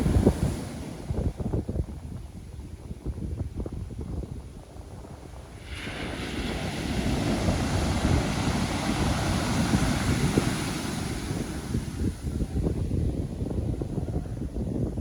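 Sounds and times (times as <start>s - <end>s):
wind rumbling on microphone: 0.0s - 15.0s
ocean wave breaking: 5.5s - 12.6s.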